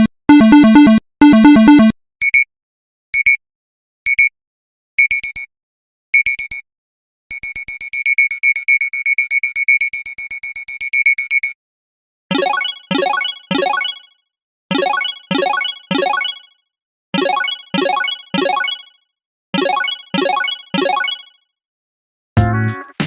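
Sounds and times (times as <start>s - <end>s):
alarm melody: 0.0s - 1.9s
electronic alarm clock beeping: 0.0s - 1.9s, 12.3s - 14.1s, 14.7s - 16.6s, 17.2s - 19.0s, 19.6s - 21.4s.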